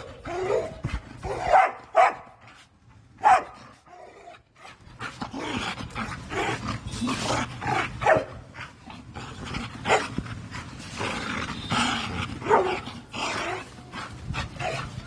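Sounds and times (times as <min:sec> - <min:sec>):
dog barking: 0:01.3 - 0:02.4, 0:03.2 - 0:03.6, 0:08.0 - 0:08.4, 0:12.4 - 0:12.8.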